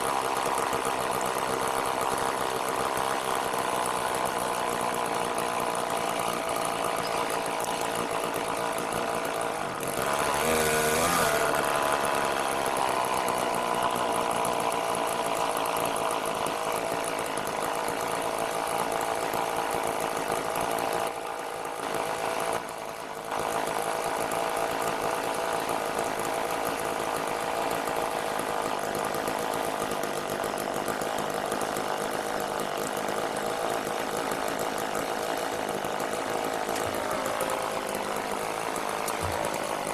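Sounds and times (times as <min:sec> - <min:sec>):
chainsaw running: 0:00.0 - 0:39.9.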